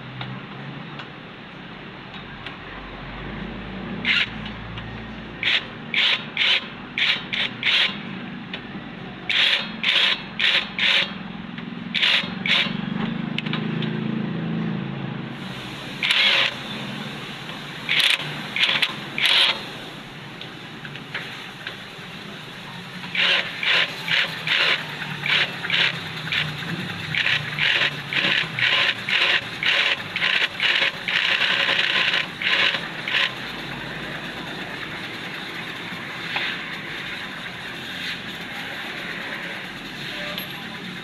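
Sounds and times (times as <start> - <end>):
rhythmic scraping strokes: 9.3 - 11.2, 11.9 - 12.8, 22.9 - 41.0.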